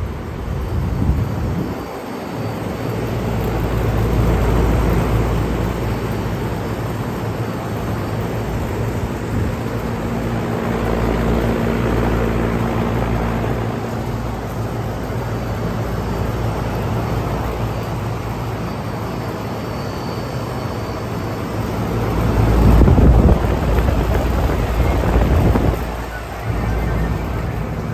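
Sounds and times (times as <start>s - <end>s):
air conditioner fan rushing: 0.0s - 27.9s
higher hum tone: 20.3s - 27.9s
low compressor hum: 22.1s - 27.9s.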